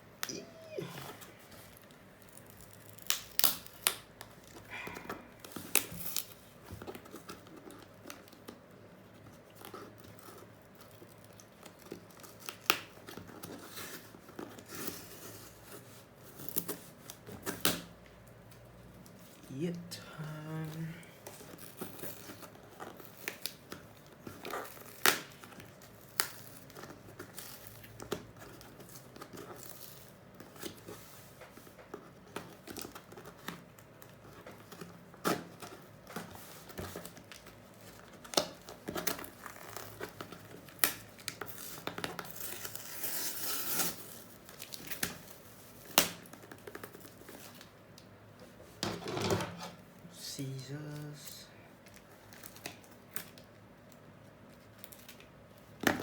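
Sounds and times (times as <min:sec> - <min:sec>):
packaging tearing and crumpling: 0:00.3 - 0:04.7, 0:05.4 - 0:08.6, 0:09.4 - 0:15.7, 0:20.6 - 0:30.9, 0:32.2 - 0:47.7, 0:51.8 - 0:56.0.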